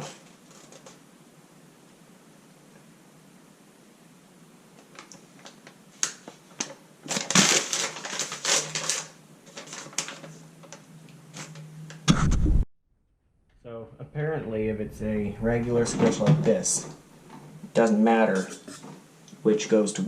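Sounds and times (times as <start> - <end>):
packaging crinkling: 4.9 - 11.6.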